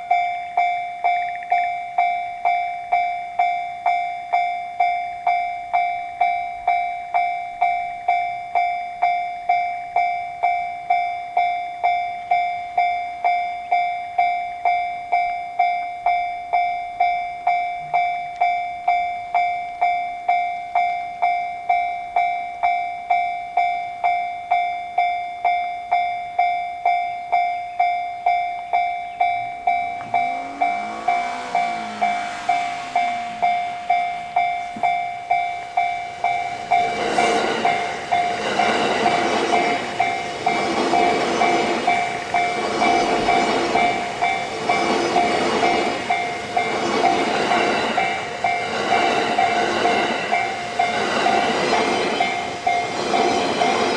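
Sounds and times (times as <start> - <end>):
level-crossing warning bell: 0.0 - 53.9
train running noise: 28.7 - 53.9.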